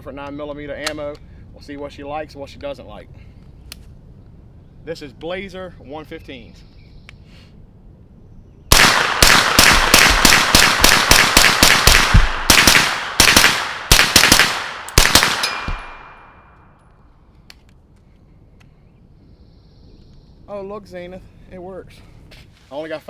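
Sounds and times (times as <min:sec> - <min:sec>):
suppressed gunshots: 0:08.7 - 0:16.6.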